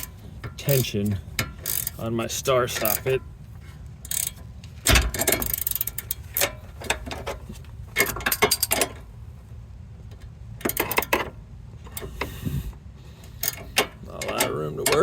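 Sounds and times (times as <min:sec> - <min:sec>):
ratcheting wrench clicking: 0:00.0 - 0:03.3, 0:04.0 - 0:07.4, 0:08.0 - 0:09.0, 0:10.6 - 0:11.3, 0:13.3 - 0:15.0.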